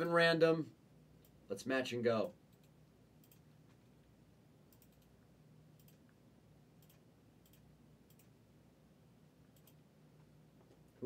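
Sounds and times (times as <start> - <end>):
faint computer clicks: 2.2 - 3.8, 4.7 - 5.2, 5.8 - 6.2, 6.8 - 8.4, 9.5 - 9.8.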